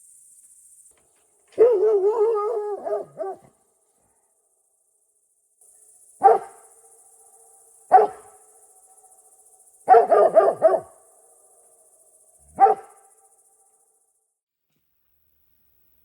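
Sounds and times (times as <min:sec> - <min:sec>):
dog barking: 0:01.6 - 0:03.5, 0:06.2 - 0:06.6, 0:07.9 - 0:08.3, 0:09.9 - 0:11.0, 0:12.5 - 0:13.0.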